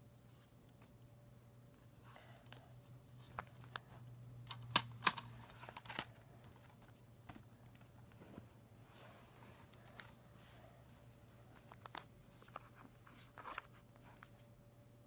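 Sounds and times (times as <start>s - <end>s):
faint low hum: 0.0s - 15.0s
plastic case clicks and rustles: 4.5s - 7.9s.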